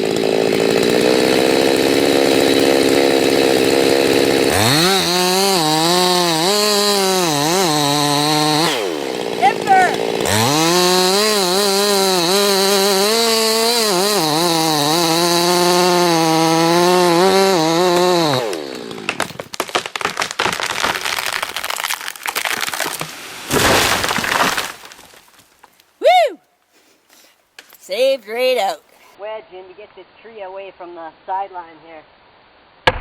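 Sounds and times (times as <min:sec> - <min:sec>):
chainsaw cutting at full throttle: 0:00.0 - 0:19.5
wood cracking and snapping: 0:13.3 - 0:25.9.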